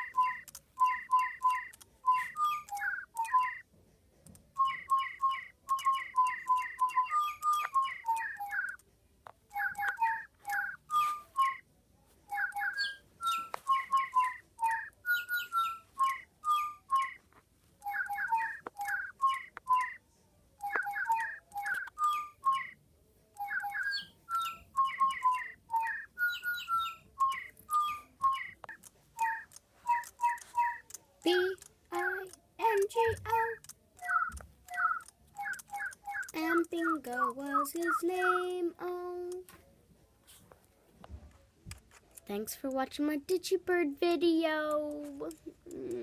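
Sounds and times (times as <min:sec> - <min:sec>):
electronic toy birds whistling: 0:00.0 - 0:03.6, 0:04.6 - 0:08.8, 0:09.5 - 0:11.6, 0:12.3 - 0:17.2, 0:17.8 - 0:20.0, 0:20.6 - 0:22.8, 0:23.4 - 0:38.6.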